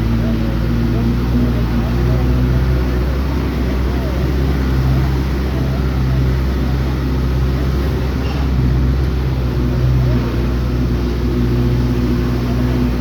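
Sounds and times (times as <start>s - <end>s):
vehicle engine droning: 0.0s - 13.0s.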